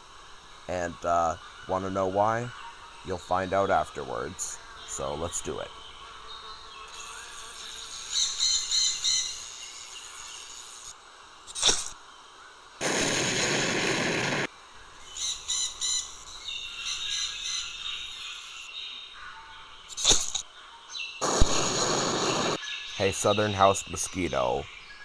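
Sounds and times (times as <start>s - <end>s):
loud steady hiss: 0.0s - 5.7s, 6.9s - 18.7s, 21.2s - 24.7s
sharp click: 11.5s - 12.0s, 19.9s - 20.4s.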